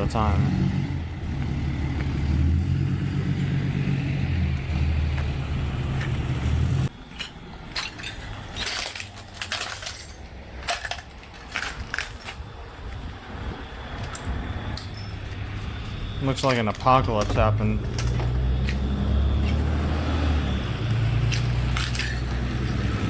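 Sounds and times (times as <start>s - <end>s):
car engine and road rumble: 0.0s - 23.0s
sharp clinks and crunches: 6.9s - 13.1s, 13.8s - 23.0s.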